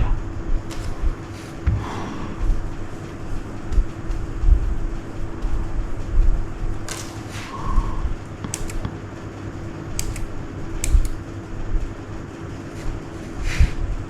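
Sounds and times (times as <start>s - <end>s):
steady hum: 0.0s - 14.0s
mechanical keyboard key clicks: 8.4s - 9.0s, 10.0s - 11.2s.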